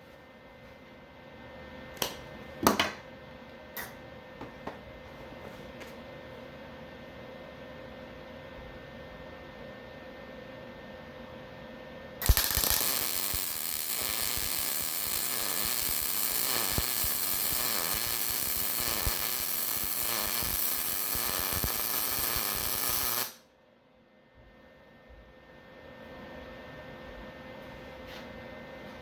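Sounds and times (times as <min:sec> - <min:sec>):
welding arc crackling: 0:12.2 - 0:23.4.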